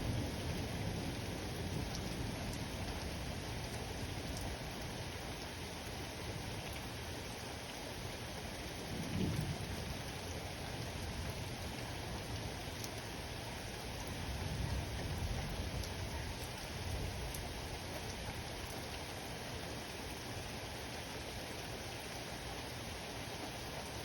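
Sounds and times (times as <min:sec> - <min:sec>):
steady rain falling: 0:00.0 - 0:24.0
low rumbling thunder: 0:08.8 - 0:10.2.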